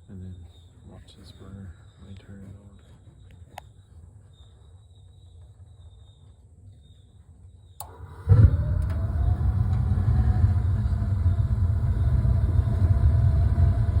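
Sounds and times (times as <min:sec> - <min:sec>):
burner ignition click: 0:07.8 - 0:09.9
low rumble of burning gas: 0:07.8 - 0:14.0.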